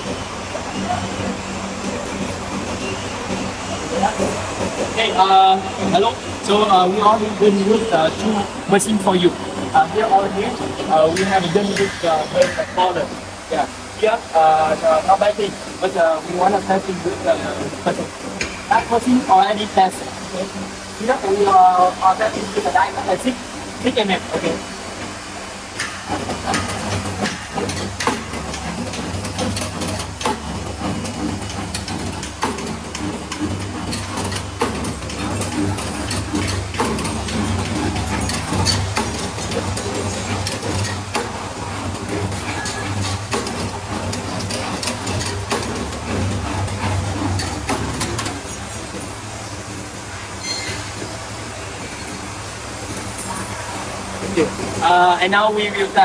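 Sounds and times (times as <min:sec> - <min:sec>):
machine motors humming: 0:00.0 - 0:56.0
sharp clacks of bar bending: 0:11.0 - 0:13.3, 0:25.8 - 0:49.3, 0:50.2 - 0:51.2.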